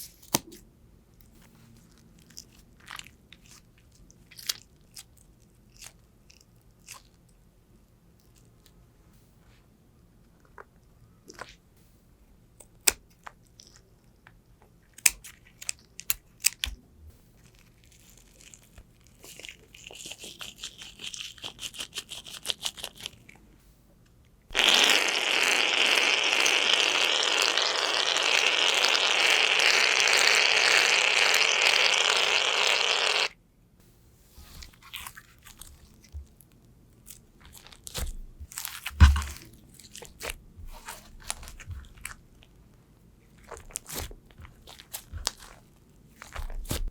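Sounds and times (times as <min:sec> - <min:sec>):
slime squeezed by hand crackling: 0:24.5 - 0:33.4, 0:43.4 - 0:46.9.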